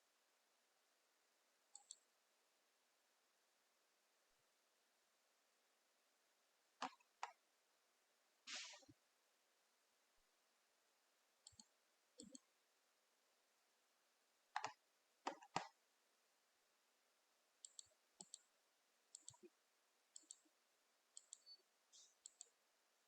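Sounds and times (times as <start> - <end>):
computer mouse clicking: 1.7 - 2.0, 6.8 - 7.4, 11.4 - 12.5, 14.6 - 15.8, 17.6 - 18.5, 19.1 - 19.5, 20.2 - 20.5, 21.2 - 22.6.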